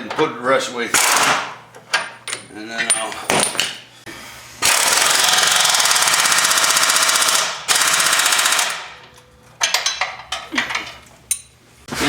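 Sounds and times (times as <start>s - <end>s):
impact wrench hammering: 1.0s - 1.6s, 4.6s - 10.2s.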